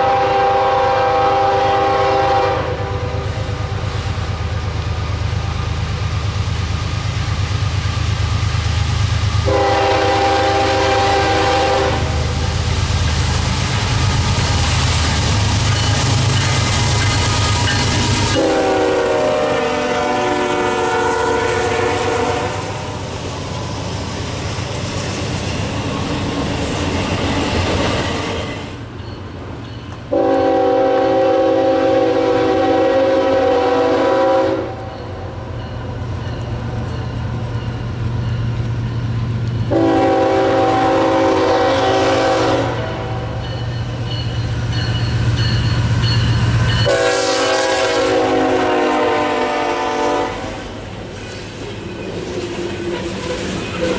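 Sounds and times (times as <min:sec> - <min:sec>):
locomotive air horn blasts: 0:00.0 - 0:03.6, 0:09.4 - 0:12.3, 0:18.3 - 0:22.9, 0:30.1 - 0:34.9, 0:39.7 - 0:43.4, 0:46.8 - 0:50.7
locomotive engine hum: 0:00.0 - 0:53.9
passing train rumble: 0:00.0 - 0:53.9.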